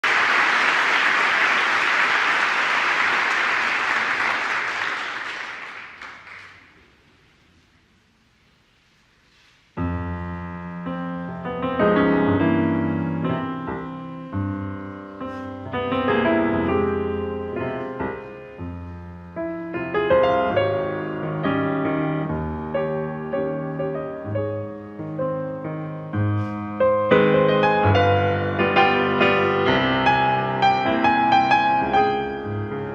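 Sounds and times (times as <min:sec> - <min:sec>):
audience applauding: 0:00.0 - 0:06.8
solo piano: 0:09.8 - 0:32.9.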